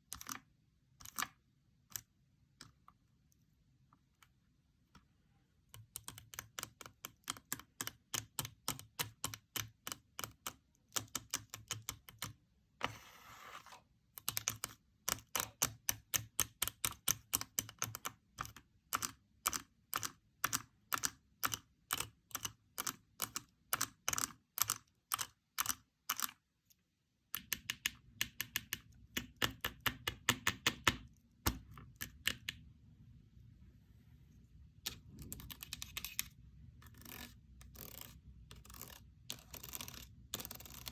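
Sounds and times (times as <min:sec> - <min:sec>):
fingers clicking paper fidget board: 0:05.8 - 0:12.4, 0:14.1 - 0:26.5, 0:27.4 - 0:32.6, 0:34.9 - 0:40.9
soft scratching: 0:12.8 - 0:13.9.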